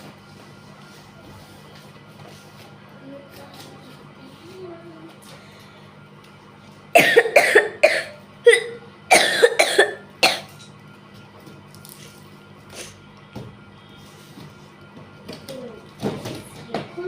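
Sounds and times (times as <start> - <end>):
faint steady hum: 0.1 - 17.0
person coughing: 7.0 - 10.6.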